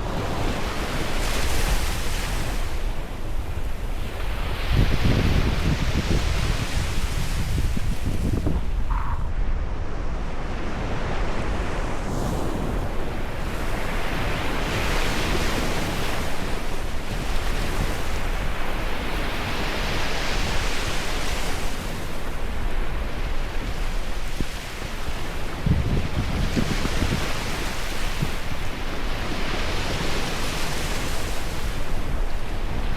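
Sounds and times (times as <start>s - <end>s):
waves washing in: 0.0s - 32.9s
wind rumble on microphone: 0.0s - 32.9s.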